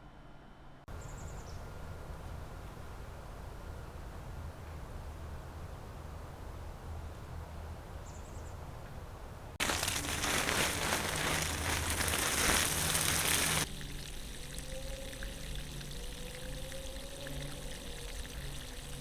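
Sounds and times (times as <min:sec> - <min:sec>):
water pouring: 0:09.6 - 0:19.0
water rushing: 0:09.6 - 0:19.0.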